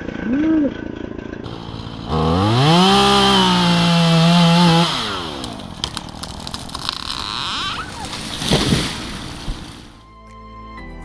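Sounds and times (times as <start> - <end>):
chainsaw revving: 0.8 - 10.1
sharp clicks: 4.7 - 9.8.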